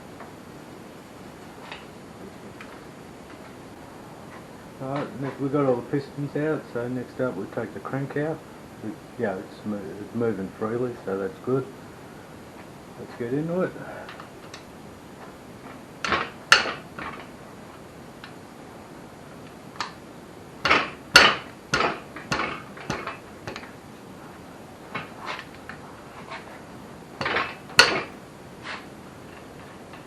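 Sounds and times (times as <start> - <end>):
metal tools and engine parts clanking: 27.2 - 28.2.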